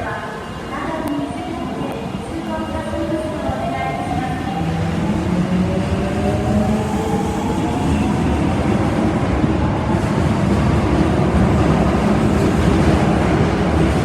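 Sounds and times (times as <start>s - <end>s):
train wheels rumbling on rails: 0.2s - 14.0s.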